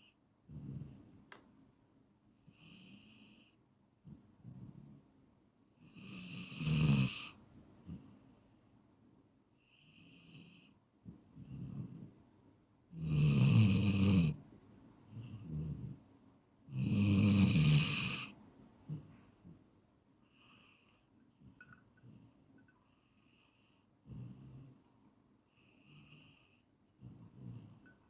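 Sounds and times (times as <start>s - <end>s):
person snoring: 5.9s - 7.4s, 13.0s - 14.4s, 16.7s - 19.0s
soft breaths: 7.3s - 12.4s, 18.0s - 28.0s.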